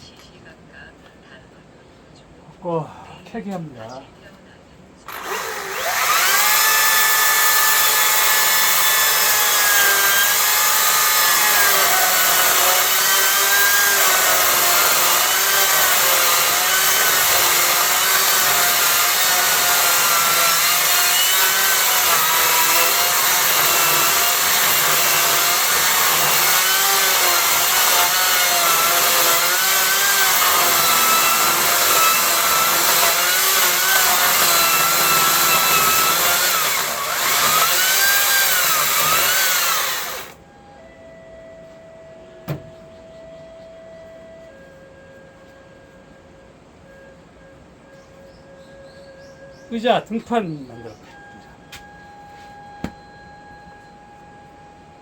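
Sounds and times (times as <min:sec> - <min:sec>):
battery chainsaw cutting log: 0:05.1 - 0:40.4.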